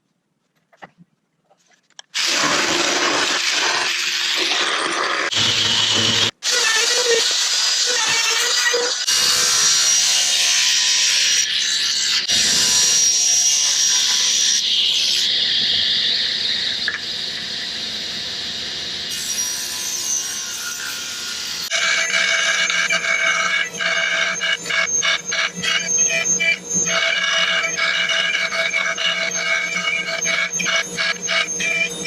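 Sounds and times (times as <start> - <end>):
power tool working wood: 2.2 - 10.0.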